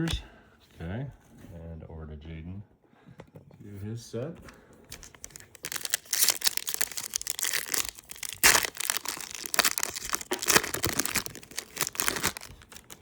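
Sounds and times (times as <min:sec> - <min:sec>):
wrapper tearing and crinkling: 0:04.9 - 0:13.0.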